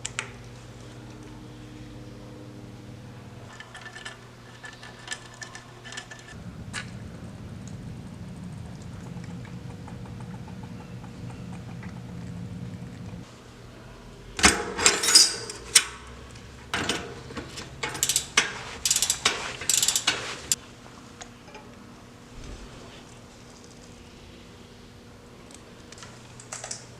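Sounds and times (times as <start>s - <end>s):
steady low hum: 0.0s - 26.9s
mechanical clicking and ratcheting: 17.8s - 20.2s.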